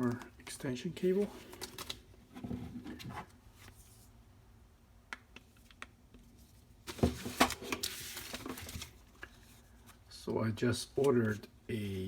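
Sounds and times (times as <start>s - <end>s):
packaging rustling: 6.9s - 9.7s.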